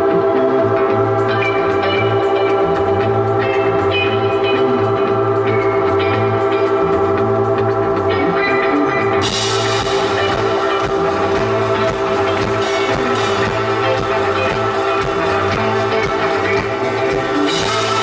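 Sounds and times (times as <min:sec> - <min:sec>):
sustained chords: 0:00.0 - 0:18.0
drum beat with cymbals: 0:09.2 - 0:18.0.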